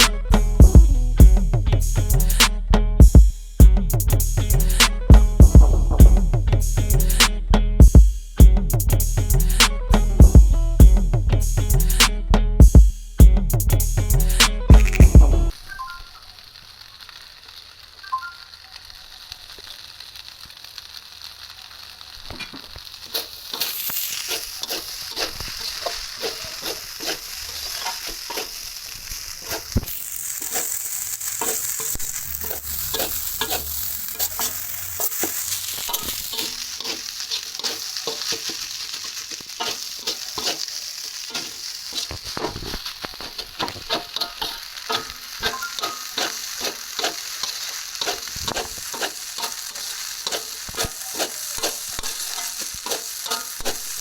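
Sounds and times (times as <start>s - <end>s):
food sizzling in a pan: 0.0s - 5.6s, 6.6s - 10.4s, 12.9s - 54.0s
spatula scraping a pan: 23.0s - 54.0s.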